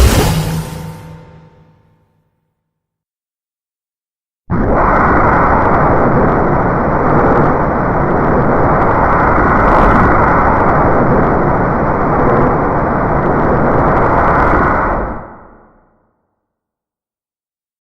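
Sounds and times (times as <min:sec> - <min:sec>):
monster rushing noise: 0:00.0 - 0:00.9, 0:04.5 - 0:12.1.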